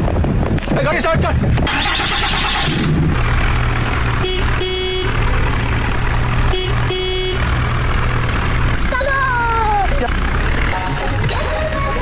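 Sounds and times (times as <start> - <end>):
diesel engine running: 0.0 - 12.0
vehicle horn tooting: 4.2 - 5.2, 6.4 - 7.5.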